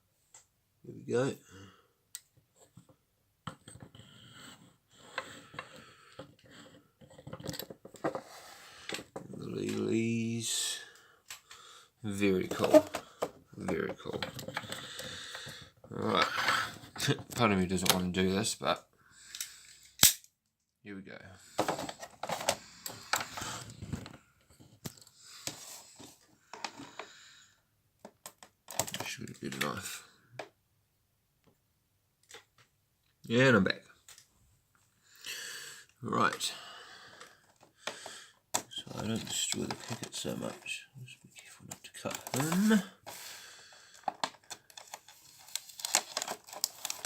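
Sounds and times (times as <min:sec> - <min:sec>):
packaging rustling and scraping: 0:12.3 - 0:14.9, 0:21.5 - 0:24.2, 0:38.7 - 0:40.8, 0:41.7 - 0:43.3, 0:43.9 - 0:47.0
toy packaging clicking: 0:42.0 - 0:42.8, 0:44.0 - 0:47.0.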